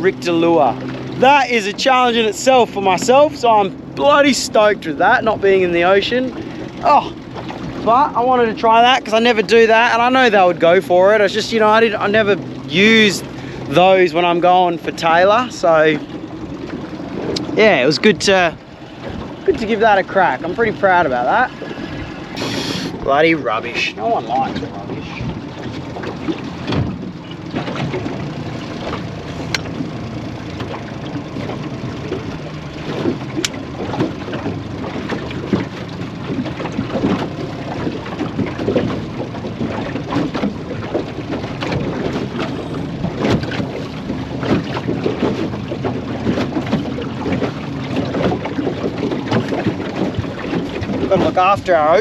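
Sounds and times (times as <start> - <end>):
outboard motor humming: 0.0 - 52.0
water slapping against hull: 0.0 - 52.0
wind on microphone: 16.8 - 28.9.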